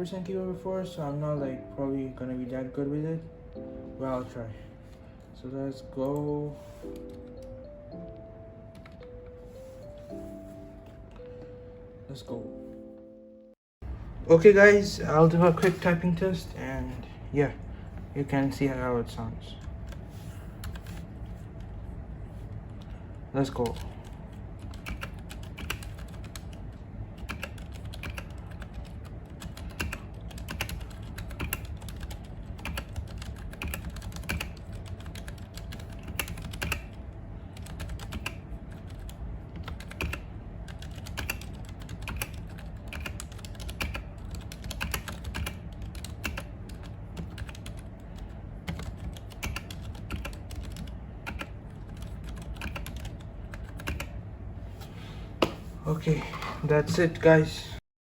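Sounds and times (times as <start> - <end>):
low steady hum: 0.0 - 57.8
mechanical keyboard typing: 23.5 - 54.2.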